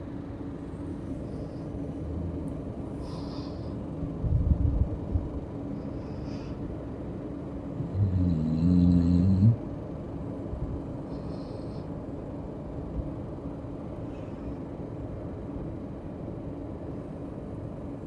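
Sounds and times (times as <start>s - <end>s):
steady low hum: 0.0s - 18.0s
pet snoring: 7.8s - 9.6s.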